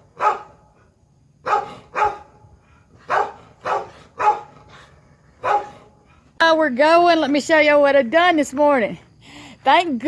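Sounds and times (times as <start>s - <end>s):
dog barking: 0.1s - 0.7s, 1.4s - 2.4s, 3.0s - 4.7s, 5.4s - 5.9s.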